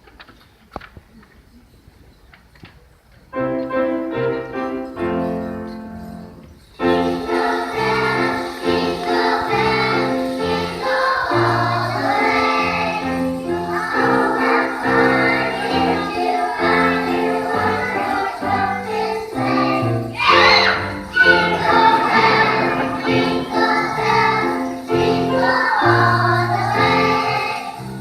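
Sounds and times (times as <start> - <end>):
musical accompaniment: 3.4 - 28.0
choir singing: 6.8 - 28.0.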